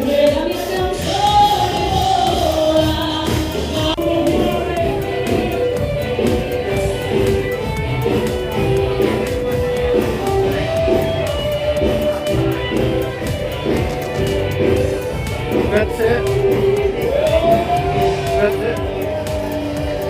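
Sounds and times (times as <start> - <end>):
dance music with guitar: 0.0 - 20.0.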